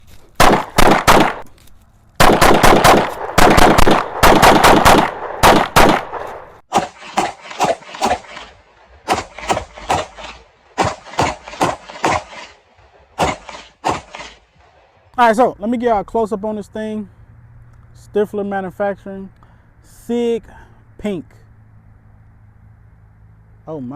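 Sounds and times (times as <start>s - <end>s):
pistol shots: 0.4s - 1.5s, 2.2s - 12.5s, 13.2s - 14.4s.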